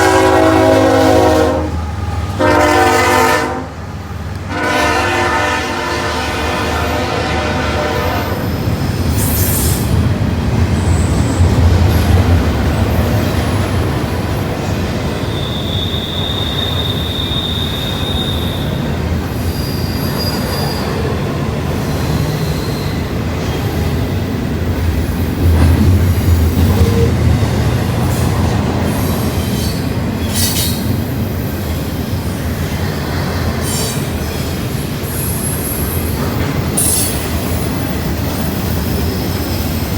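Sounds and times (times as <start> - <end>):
train horn: 0.0 - 8.6
freight train rumbling past: 0.0 - 39.9
train wheel squeals: 7.9 - 27.2, 27.9 - 39.9.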